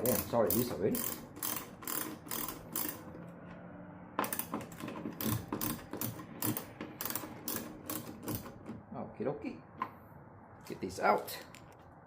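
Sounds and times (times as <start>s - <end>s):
socket ratchet clicking: 0.0s - 3.1s, 4.2s - 8.7s.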